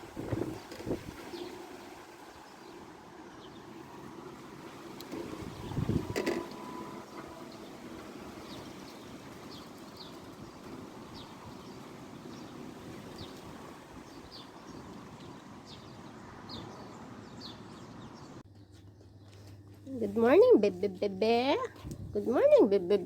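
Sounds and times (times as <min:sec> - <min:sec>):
wind rushing: 0:05.2 - 0:06.2.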